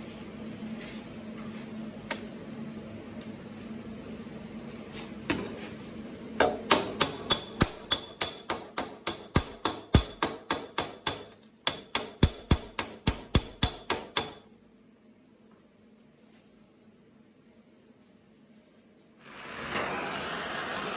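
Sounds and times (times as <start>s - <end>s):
hammer striking sheet metal: 6.4s - 14.4s.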